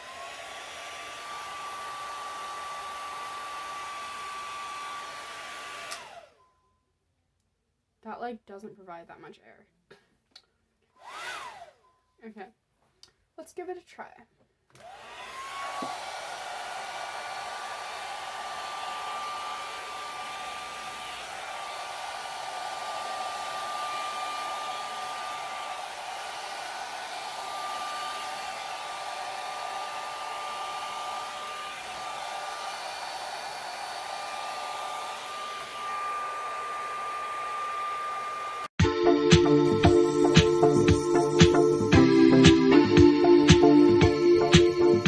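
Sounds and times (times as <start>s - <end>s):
blow dryer brush running: 0.0s - 6.4s, 11.0s - 11.8s, 14.7s - 42.6s.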